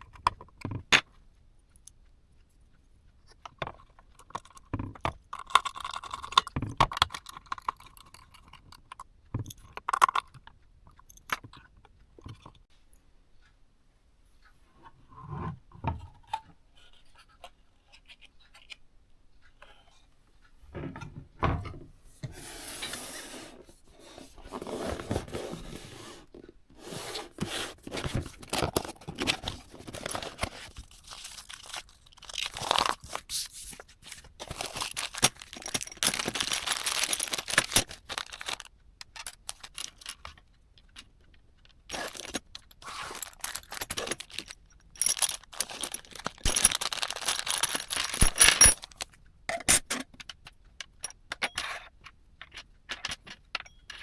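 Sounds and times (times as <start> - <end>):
packaging rustling and crinkling: 24.3 - 40.2, 41.9 - 49.2.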